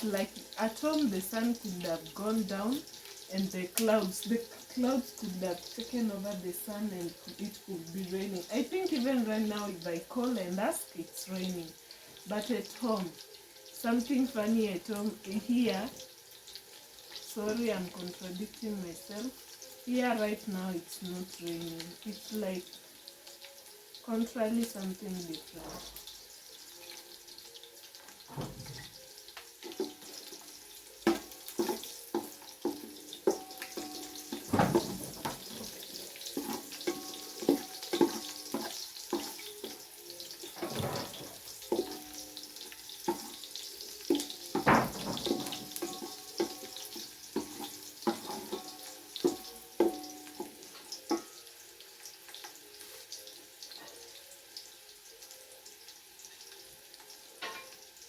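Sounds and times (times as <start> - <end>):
metal kitchenware clinking: 33.3 - 39.2, 40.5 - 42.2, 44.1 - 50.1, 57.4 - 57.8.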